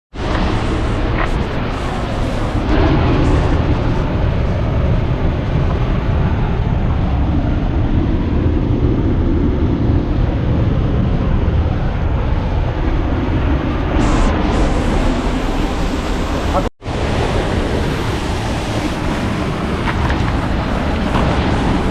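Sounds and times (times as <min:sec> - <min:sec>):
waterfall roaring: 0:00.2 - 0:07.2, 0:14.0 - 0:21.9.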